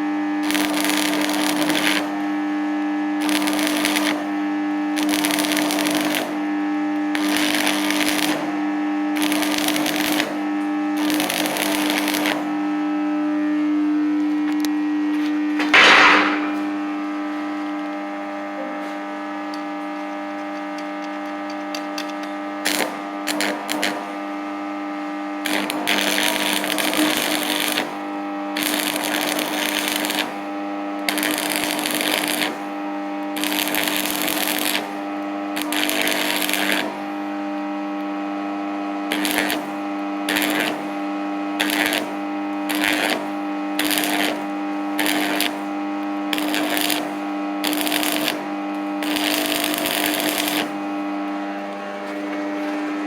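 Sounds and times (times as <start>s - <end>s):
arc welding crackling: 0.0s - 12.7s, 13.4s - 18.4s, 19.2s - 53.0s
steady hum: 13.8s - 18.0s.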